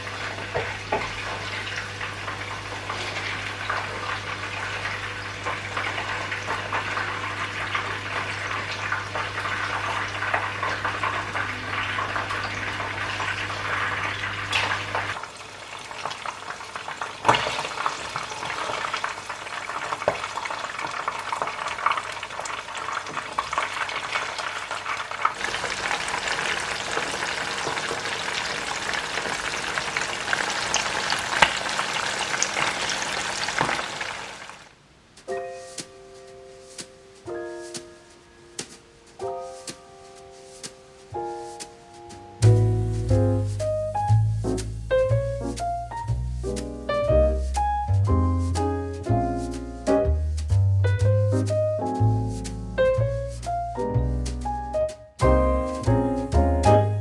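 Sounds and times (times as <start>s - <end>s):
food sizzling in hot oil: 0.0s - 34.7s, 42.4s - 50.6s, 55.2s - 57.0s
oil crackling and popping: 0.1s - 35.3s, 42.4s - 49.1s.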